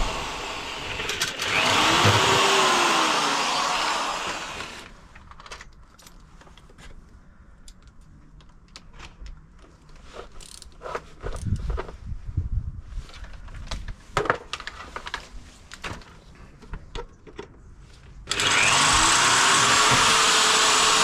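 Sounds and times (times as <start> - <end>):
power drill drilling into metal: 0.0 - 5.0, 18.3 - 21.0.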